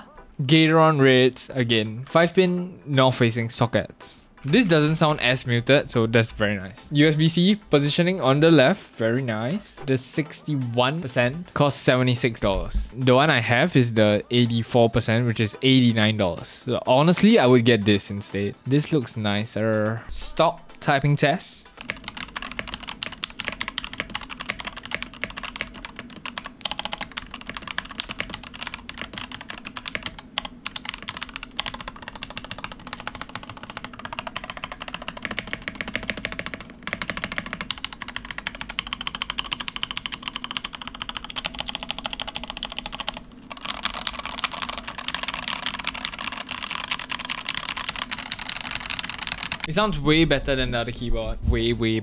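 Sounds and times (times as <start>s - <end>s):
fast typing on mechanical keyboard: 21.8s - 49.9s.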